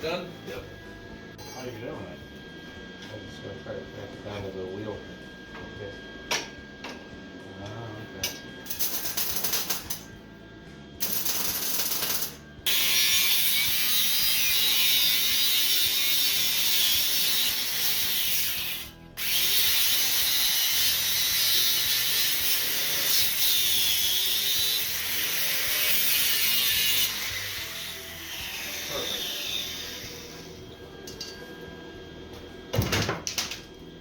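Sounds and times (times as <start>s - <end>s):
welding arc crackling: 8.7s - 10.0s, 11.0s - 18.7s.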